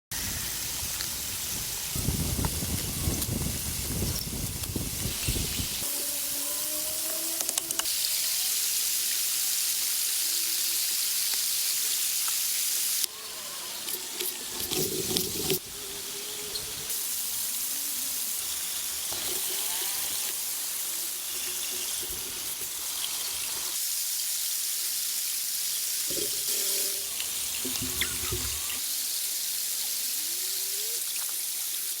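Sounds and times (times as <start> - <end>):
running water rushing: 26.1 - 32.0.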